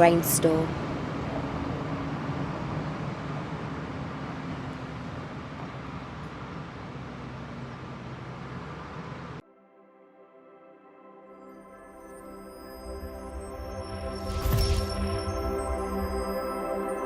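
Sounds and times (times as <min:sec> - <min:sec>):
machine running with low hum: 0:13.5 - 0:16.5.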